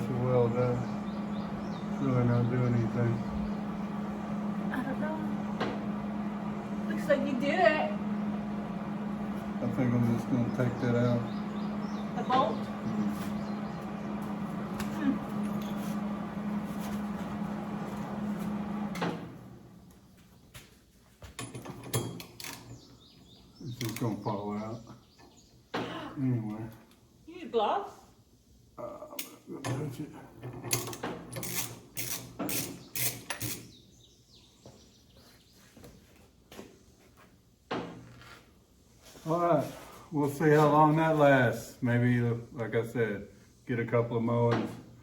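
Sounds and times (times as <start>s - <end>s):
machine hum: 0.0s - 20.3s.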